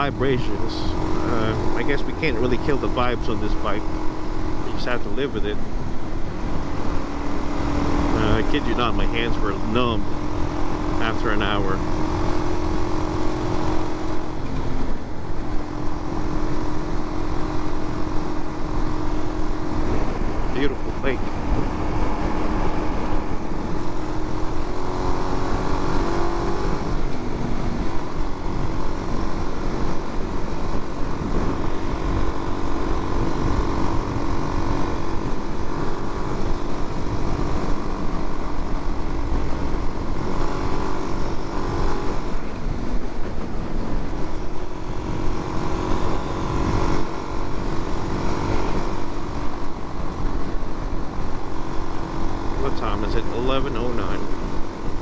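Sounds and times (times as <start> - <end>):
motorcycle engine cruising: 0.0 - 55.0
wind rushing on microphone: 0.0 - 55.0.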